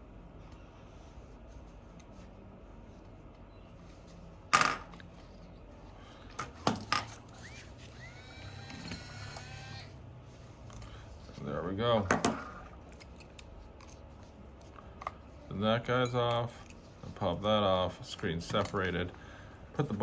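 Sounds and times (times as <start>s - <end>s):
metal tools clicking and clinking: 15.8s - 17.3s, 18.0s - 19.1s.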